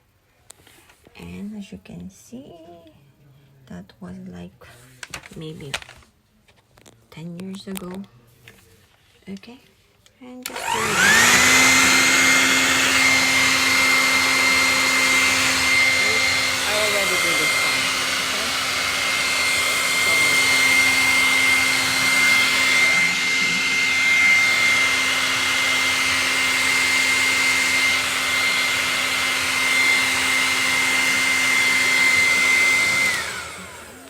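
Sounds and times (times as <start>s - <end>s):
hair dryer running: 10.4s - 34.0s.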